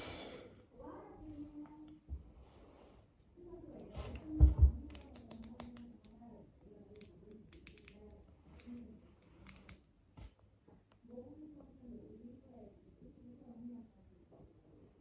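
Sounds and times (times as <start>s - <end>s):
light clicks and taps: 3.8s - 6.3s, 6.9s - 11.0s.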